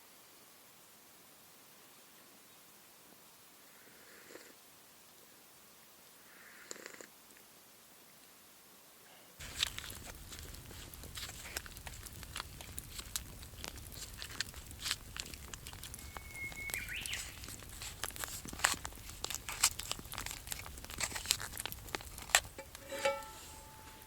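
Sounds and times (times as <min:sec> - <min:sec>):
sharp crackles and clicks: 0:09.4 - 0:24.0.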